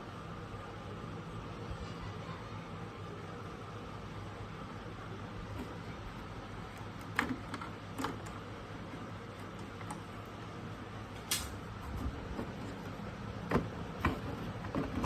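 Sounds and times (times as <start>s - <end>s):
low electrical hum: 0.0s - 15.0s
handling clicks and knocks: 5.5s - 15.0s.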